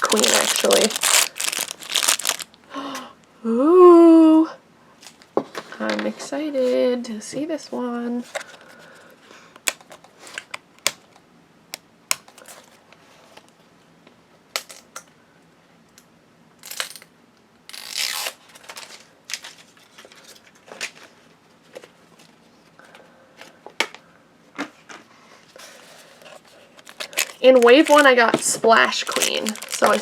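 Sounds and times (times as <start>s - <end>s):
wrapping crinkling: 0.0s - 2.6s, 17.7s - 21.0s, 25.7s - 30.0s.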